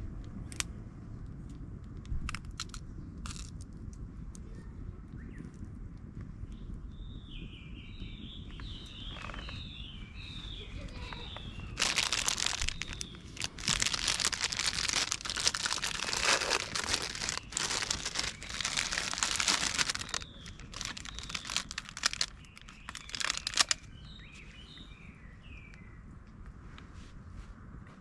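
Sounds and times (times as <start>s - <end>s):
small birds chirping: 4.4s - 5.6s, 6.3s - 26.2s
thin sheet crinkling: 10.9s - 23.9s.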